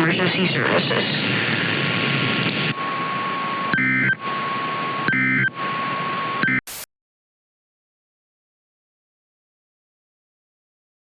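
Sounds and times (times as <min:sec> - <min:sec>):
radio static: 0:00.0 - 0:06.9.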